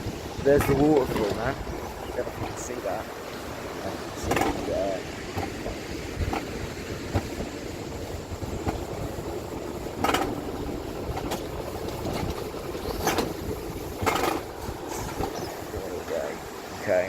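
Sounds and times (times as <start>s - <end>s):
roller coaster rumbling on track: 0.0s - 17.0s
sharp track clacks: 4.2s - 16.3s.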